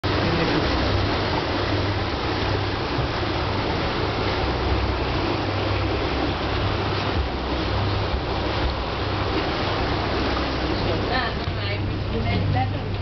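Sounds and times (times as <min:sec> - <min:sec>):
boat motor hum: 0:00.0 - 0:13.0
rushing water: 0:00.0 - 0:13.0
wind: 0:00.0 - 0:13.0.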